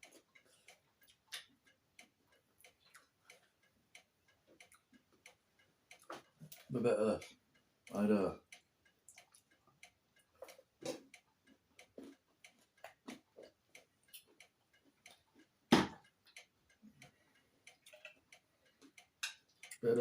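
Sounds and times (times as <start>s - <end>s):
wet chewing and lip-smacking: 0.0s - 1.5s, 2.6s - 3.6s, 4.5s - 5.1s, 8.9s - 15.5s.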